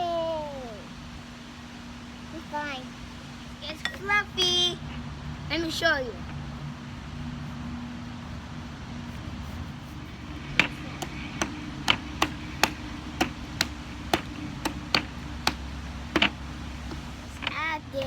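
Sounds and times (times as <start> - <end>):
low steady hum: 0.0 - 18.0
utensil tapping mixing bowl: 3.8 - 4.6, 10.6 - 17.6.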